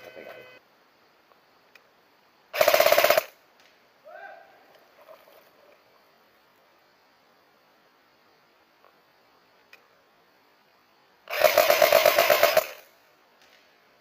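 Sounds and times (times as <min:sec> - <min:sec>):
airsoft gun rapid burst: 0:02.6 - 0:03.4, 0:11.3 - 0:12.9.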